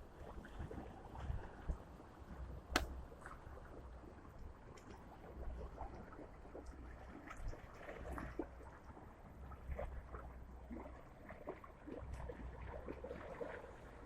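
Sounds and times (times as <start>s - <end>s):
water lapping and trickling: 0.0s - 14.0s.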